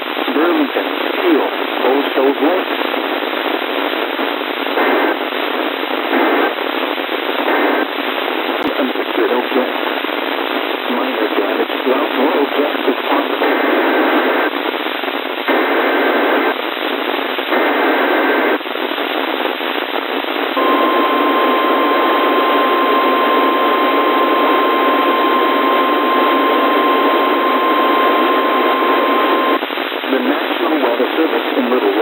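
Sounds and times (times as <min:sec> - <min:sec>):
radio hiss: 0:00.0 - 0:32.0
steady warning alarm tone: 0:20.6 - 0:29.6
warbling data header bursts: 0:20.6 - 0:29.6.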